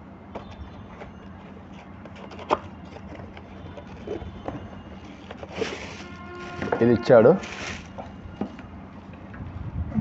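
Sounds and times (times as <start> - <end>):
plastic container handling: 0.4 - 8.1.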